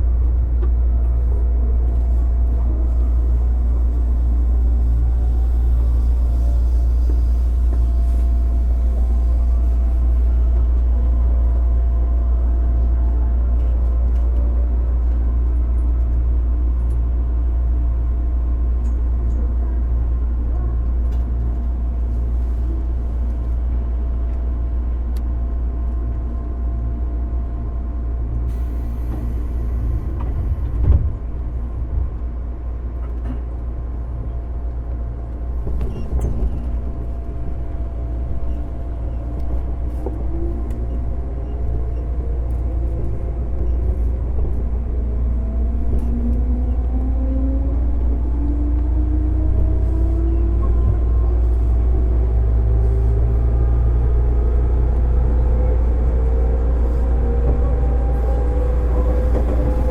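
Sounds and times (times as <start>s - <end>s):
train running rumble: 0.0s - 59.9s.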